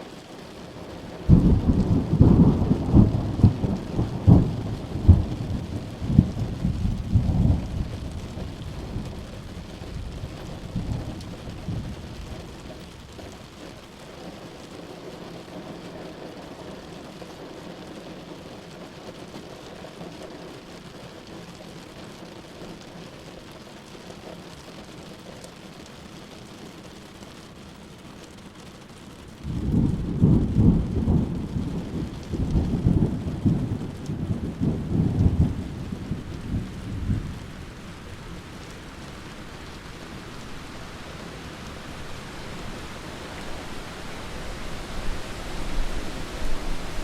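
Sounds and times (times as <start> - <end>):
steady rain falling: 0.0 - 47.0
thunder rumbling: 1.2 - 13.2, 29.3 - 47.0.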